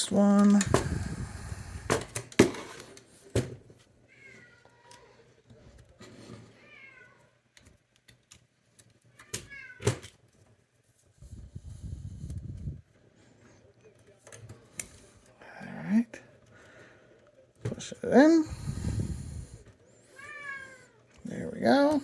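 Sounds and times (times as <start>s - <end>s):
cat meowing: 9.2s - 9.9s, 20.1s - 21.0s.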